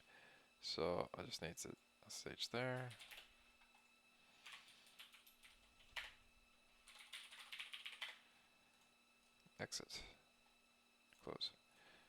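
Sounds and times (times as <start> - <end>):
faint typing on keyboard: 2.6 - 6.2, 6.8 - 8.9.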